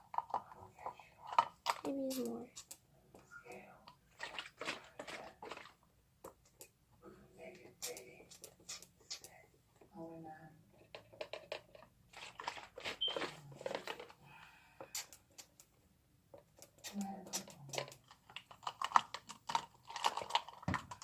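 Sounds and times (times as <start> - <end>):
slime clicking and crackling: 14.8 - 15.7, 16.4 - 21.0.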